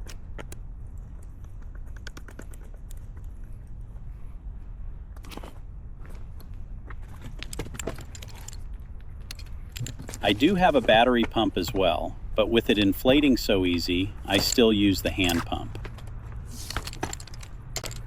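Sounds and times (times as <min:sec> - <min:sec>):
steady low rumble: 0:02.7 - 0:18.0
gear clicking and rattling: 0:06.4 - 0:12.1, 0:12.7 - 0:18.0
scraping rustles: 0:07.0 - 0:08.7, 0:13.8 - 0:18.0.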